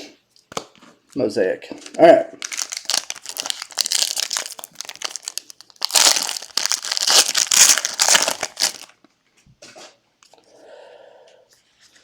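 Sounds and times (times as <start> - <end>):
plastic wrapper crinkling: 1.8 - 9.0.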